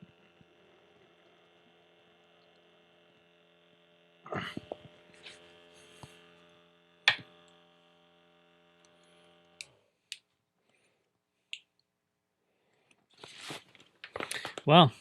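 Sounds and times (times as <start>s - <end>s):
pump motor humming: 0.0s - 9.7s.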